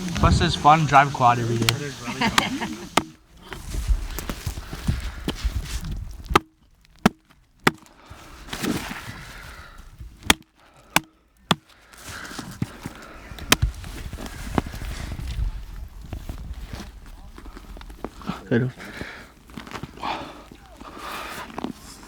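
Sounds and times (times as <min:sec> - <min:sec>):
blade chopping strikes: 0:00.0 - 0:03.2, 0:06.3 - 0:06.5, 0:07.1 - 0:07.9
soft rustling: 0:00.0 - 0:06.4, 0:11.9 - 0:22.0.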